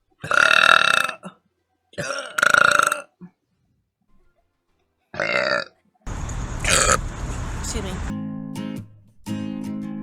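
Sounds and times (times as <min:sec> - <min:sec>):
woman burping: 0:00.2 - 0:01.4, 0:02.0 - 0:03.4, 0:05.2 - 0:05.8, 0:06.6 - 0:07.0.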